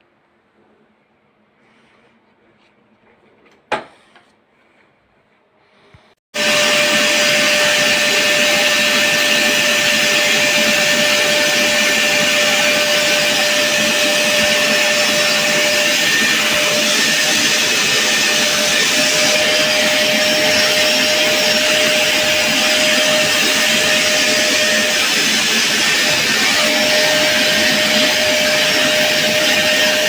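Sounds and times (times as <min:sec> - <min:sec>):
vacuum cleaner motor whining: 0:06.4 - 0:30.0.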